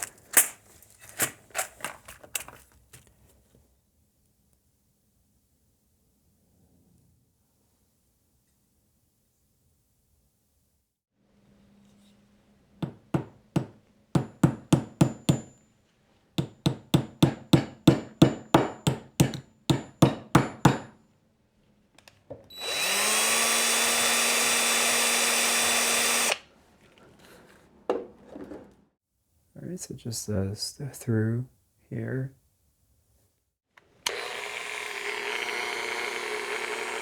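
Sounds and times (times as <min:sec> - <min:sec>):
small electric power tool running: 0:22.5 - 0:26.4, 0:33.9 - 0:37.0.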